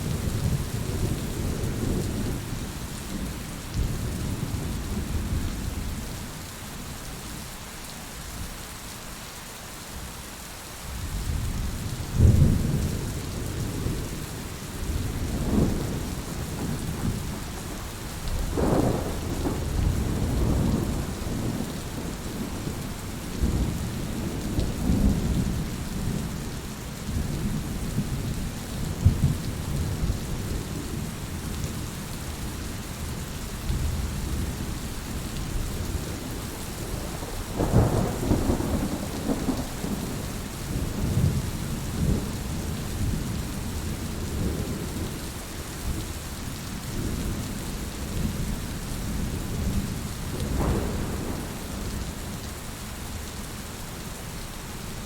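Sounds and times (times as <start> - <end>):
heavy rain: 0.0 - 55.0
thunder rumbling: 14.8 - 26.4, 33.0 - 45.0, 49.1 - 52.4.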